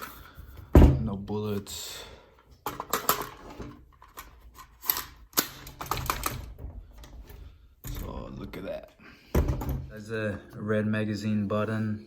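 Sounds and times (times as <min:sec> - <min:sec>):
rifle parts clicking and rattling: 0:02.6 - 0:08.3.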